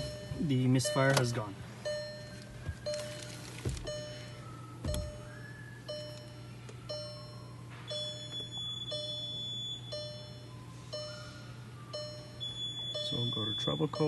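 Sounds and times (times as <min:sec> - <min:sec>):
steady low hum: 0:00.0 - 0:14.0
electronic chime: 0:12.0 - 0:14.0.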